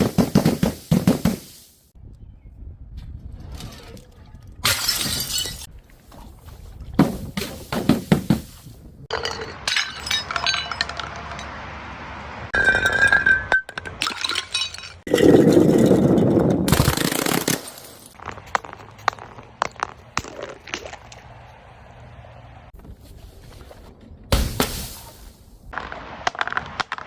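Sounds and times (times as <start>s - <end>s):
glass bottles smashing: 4.6s - 5.7s, 9.1s - 11.6s, 12.6s - 16.2s
glass shards tinkling: 9.1s - 11.5s, 12.6s - 15.1s.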